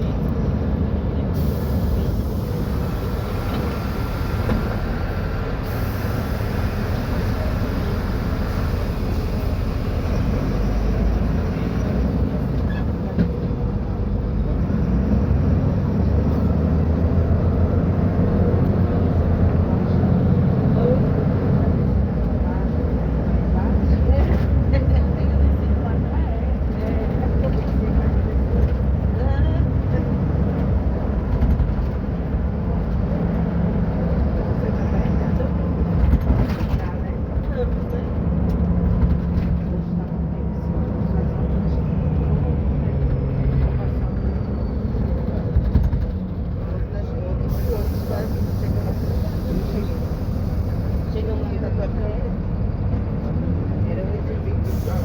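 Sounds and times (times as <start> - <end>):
bus diesel engine rumbling: 0.0 - 55.0.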